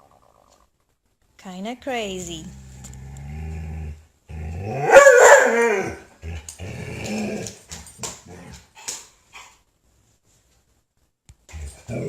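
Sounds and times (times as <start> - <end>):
dog growling and yipping: 2.5 - 8.7, 11.5 - 12.0.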